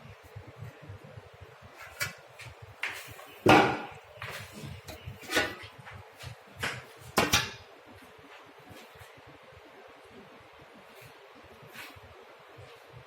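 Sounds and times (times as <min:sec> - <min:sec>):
kitchen items knocking and clunking: 0:03.4 - 0:05.8, 0:06.6 - 0:07.7.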